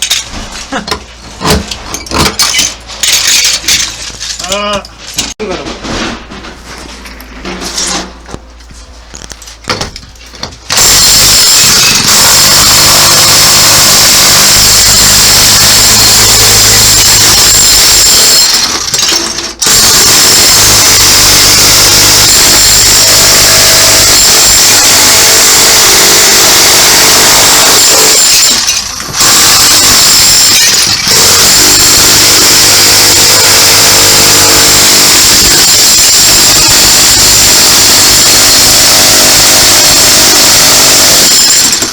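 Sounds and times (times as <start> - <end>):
hammer drill chiselling tiles: 10.7 - 41.9.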